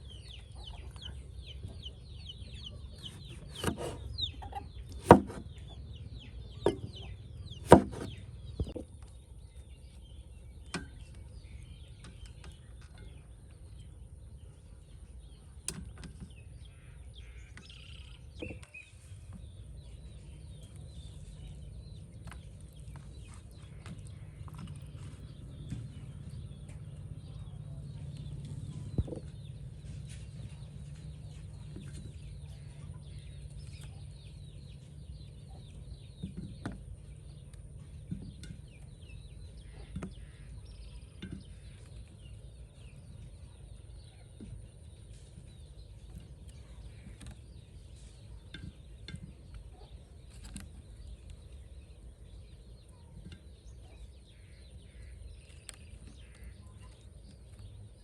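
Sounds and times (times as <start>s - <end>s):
sharp knocks and clatters: 3.0s - 5.6s, 6.6s - 8.8s
steady low rumble: 19.4s - 36.2s.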